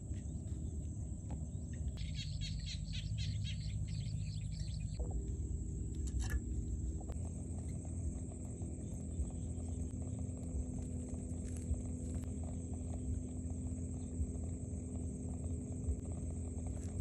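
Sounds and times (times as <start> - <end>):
bird chirping: 0.0 - 5.0, 7.6 - 10.4
low rumble: 0.0 - 17.0.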